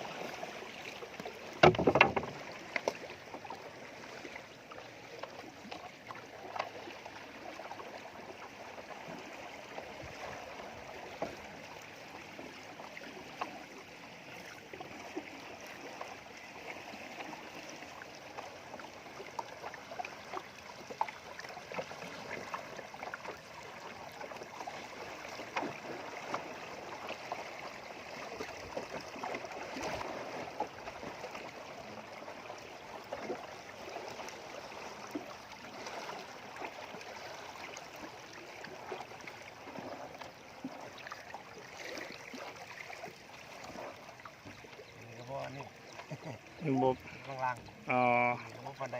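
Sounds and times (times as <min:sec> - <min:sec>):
river water splashing and trickling: 0:00.0 - 0:48.9
light knocks: 0:01.6 - 0:03.0.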